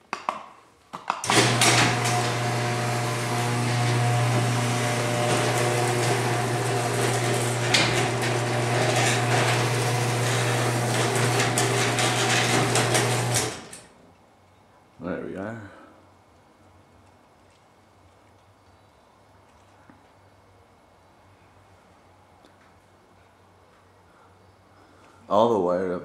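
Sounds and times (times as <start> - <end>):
garage door opener clicks: 1.2 - 14.0
garage door opener motor humming: 1.2 - 14.0.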